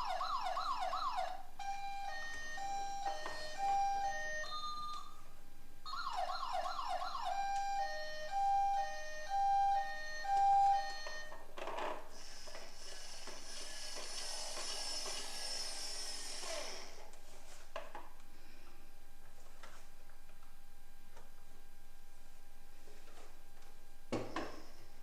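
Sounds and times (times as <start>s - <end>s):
electronic two-tone siren: 0.0s - 5.3s, 5.9s - 11.5s
hissing and rubbing handling noise: 12.1s - 18.0s.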